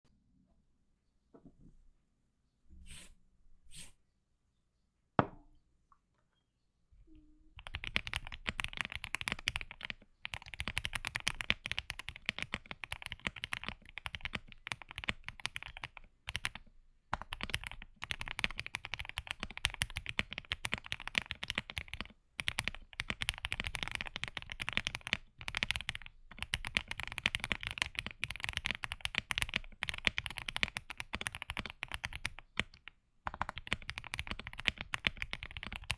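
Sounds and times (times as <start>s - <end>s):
fast typing on mechanical keyboard: 7.6s - 35.9s.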